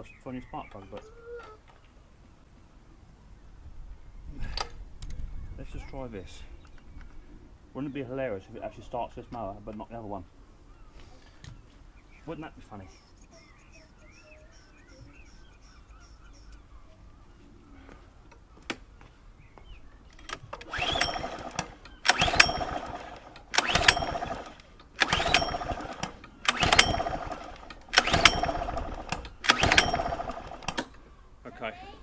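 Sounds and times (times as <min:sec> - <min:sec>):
lawnmower engine pull-start cranking: 0:20.2 - 0:31.0.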